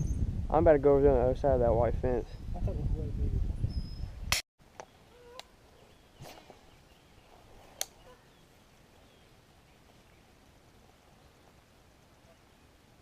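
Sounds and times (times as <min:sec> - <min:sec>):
faint outdoor hiss: 0:04.6 - 0:13.0.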